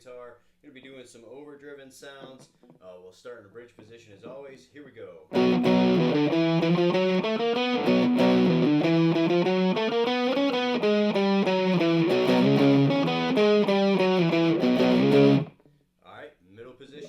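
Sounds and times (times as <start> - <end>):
overdriven electric guitar riff: 5.3 - 15.5.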